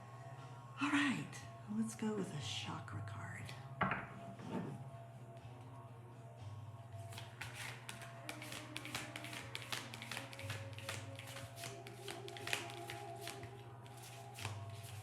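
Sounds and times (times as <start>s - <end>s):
soft background music: 0.0s - 15.0s
cards being shuffled: 7.1s - 15.0s.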